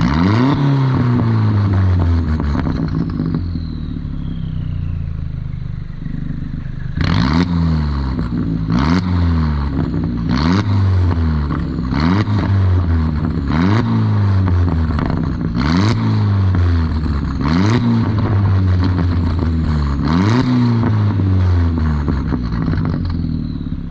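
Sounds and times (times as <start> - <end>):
car engine idling and revving: 0.0 - 23.9
turbo whistle: 3.4 - 7.0.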